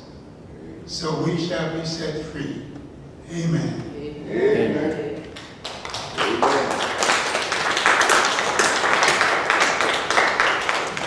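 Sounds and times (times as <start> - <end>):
crowd applauding: 5.2 - 11.0.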